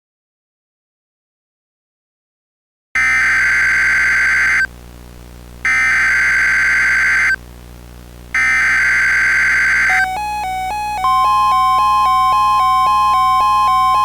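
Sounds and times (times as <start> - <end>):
digital data tones: 3.0 - 4.7, 5.7 - 7.4, 8.4 - 14.0.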